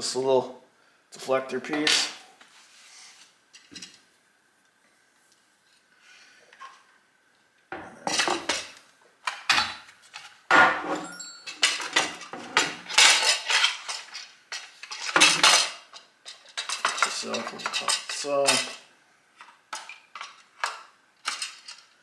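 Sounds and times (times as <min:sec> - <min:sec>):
small metal parts clattering: 0:11.0 - 0:22.0.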